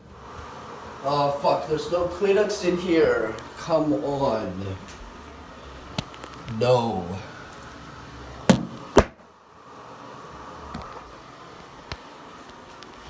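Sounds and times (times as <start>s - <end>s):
faint room hum: 0.0s - 13.0s
sharp knocks: 8.5s - 9.2s.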